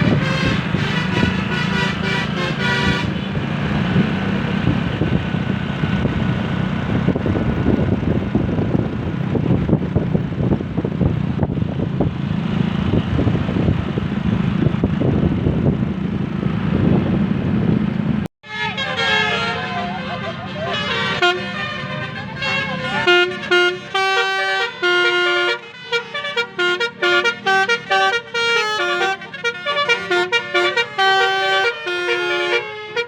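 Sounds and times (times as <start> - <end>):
multi-tone musical horn: 0.0 - 3.4, 18.4 - 33.0
vehicle engine and road rumble: 0.0 - 33.0.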